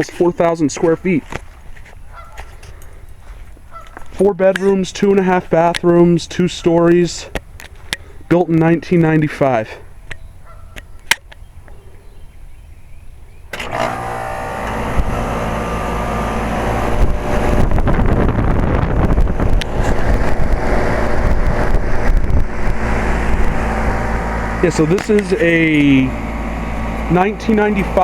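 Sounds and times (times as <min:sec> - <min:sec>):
air conditioner compressor hum: 0:13.5 - 0:28.0.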